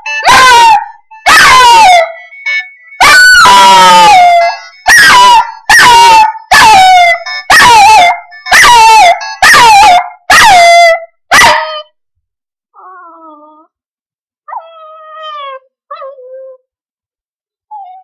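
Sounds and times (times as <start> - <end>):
phone ringtone: 0.0 - 3.1, 4.2 - 4.9
puppy howling: 0.1 - 2.2, 3.0 - 11.8.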